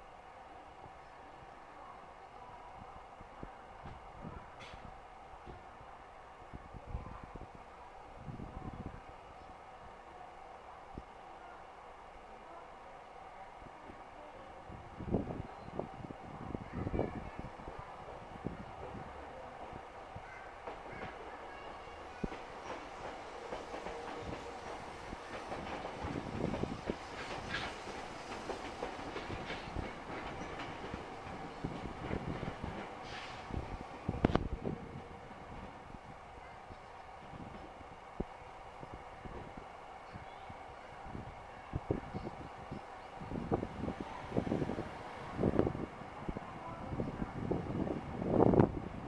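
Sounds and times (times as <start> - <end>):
wind buffeting microphone: 6.5 - 9.2, 14.7 - 21.2, 23.8 - 36.4, 37.1 - 49.0
train wheels clacking over rail joints: 22.2 - 33.4.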